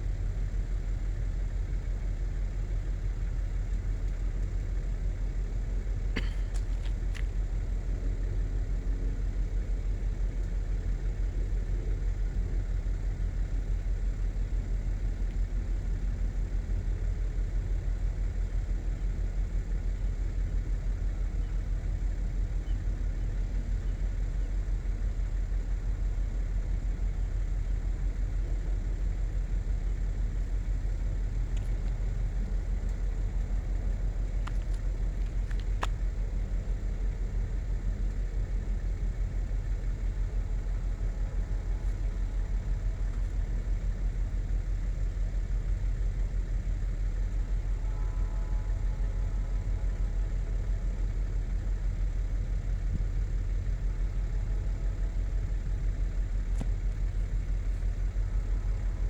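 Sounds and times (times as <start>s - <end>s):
vehicle engine idling: 0.0s - 59.0s
faint clicks: 31.4s - 36.6s.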